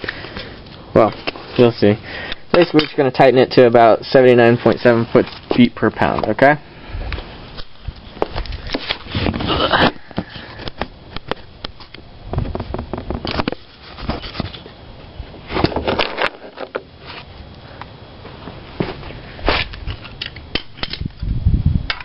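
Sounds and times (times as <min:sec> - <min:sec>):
rustling scraping bursts: 0:08.5 - 0:10.6, 0:12.6 - 0:14.7.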